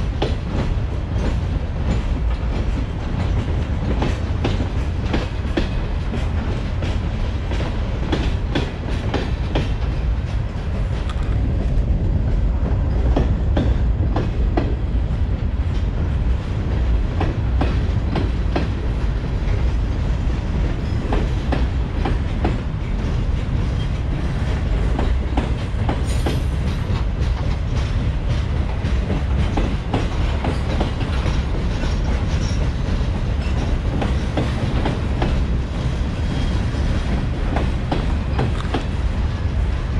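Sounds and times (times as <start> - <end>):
freight train rumbling: 0.0 - 39.9
wheels clacking on rail joints: 0.0 - 39.9.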